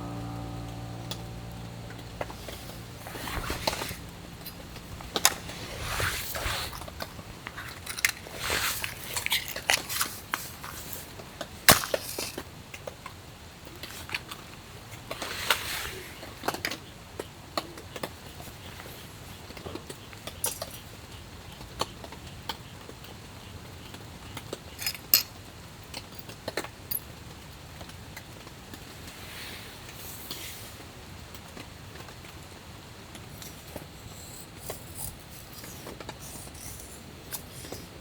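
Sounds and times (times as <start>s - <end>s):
rustling and handling noises: 2.3s - 12.4s, 33.2s - 38.0s.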